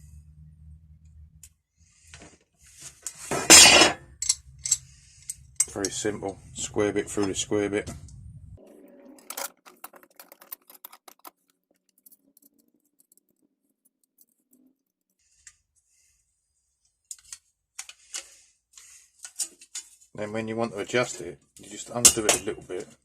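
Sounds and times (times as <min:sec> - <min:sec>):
small metal parts clicking: 0:03.1 - 0:06.0, 0:09.2 - 0:15.6.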